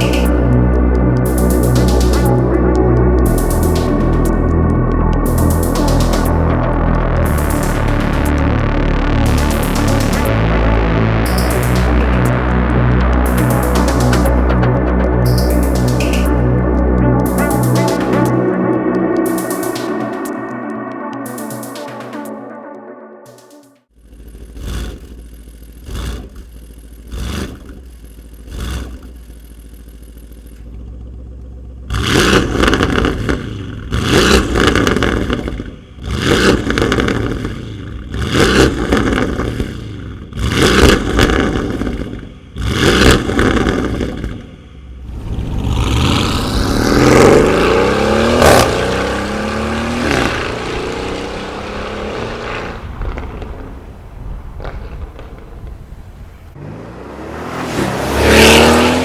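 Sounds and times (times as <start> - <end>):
engine revving: 0.0 - 22.2, 23.9 - 59.0
car accelerating hard: 24.0 - 59.0.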